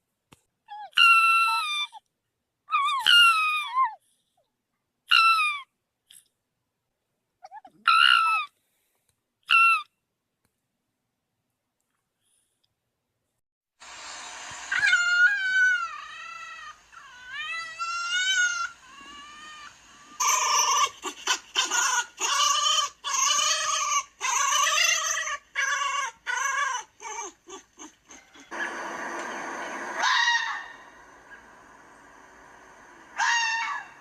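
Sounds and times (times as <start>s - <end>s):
fox whining calls: 14.6s - 34.0s.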